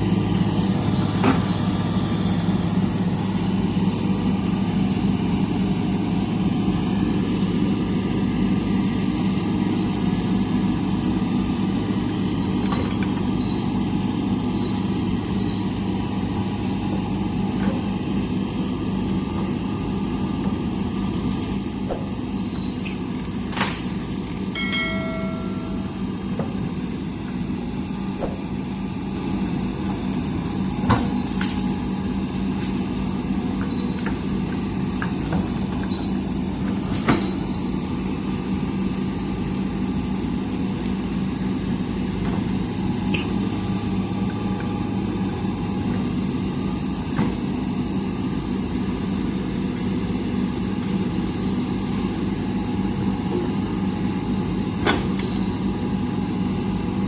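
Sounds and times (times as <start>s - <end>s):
excavator diesel engine running: 0.0s - 57.0s.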